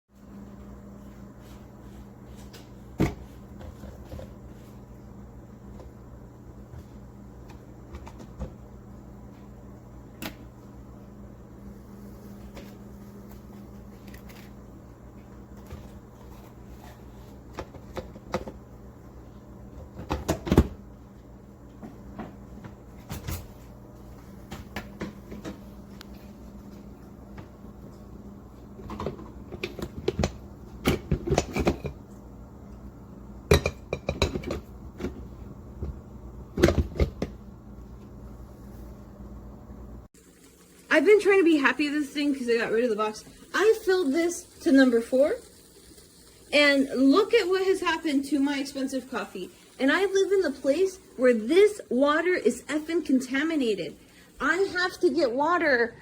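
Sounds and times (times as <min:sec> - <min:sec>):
kitchen items clicking and knocking: 0:28.8 - 0:32.0, 0:33.5 - 0:35.2.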